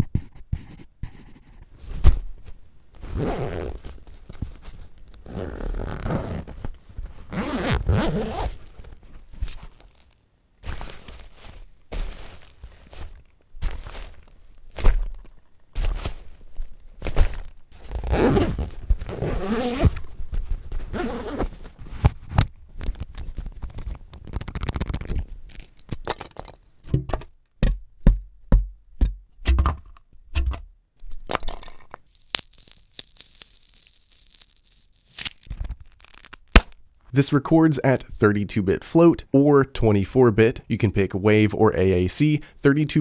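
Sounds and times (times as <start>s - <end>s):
knocks and clicks: 26.9s - 30.8s.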